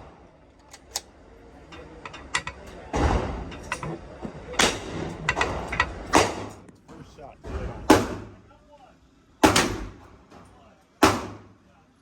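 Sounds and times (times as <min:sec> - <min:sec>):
gunshots: 0:04.6 - 0:06.6, 0:07.6 - 0:08.4, 0:09.4 - 0:10.1, 0:11.0 - 0:11.5.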